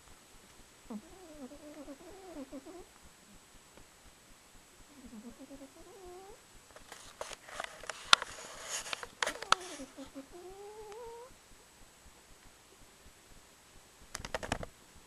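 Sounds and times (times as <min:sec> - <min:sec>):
sharp clicks: 0:00.0 - 0:14.8
cat snoring: 0:00.9 - 0:02.9, 0:04.9 - 0:06.4.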